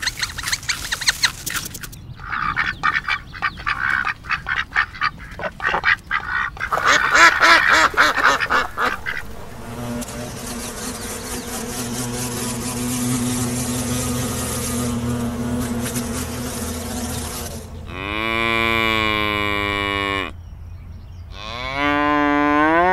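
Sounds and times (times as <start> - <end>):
ducks quacking: 2.2 - 13.3
low hum: 6.7 - 21.4.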